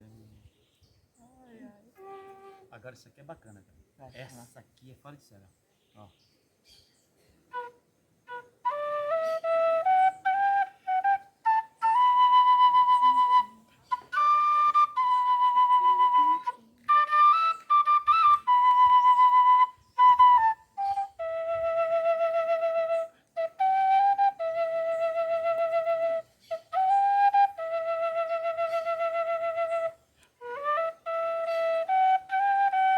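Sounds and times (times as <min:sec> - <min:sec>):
end-blown flute melody: 0:07.5 - 0:32.9.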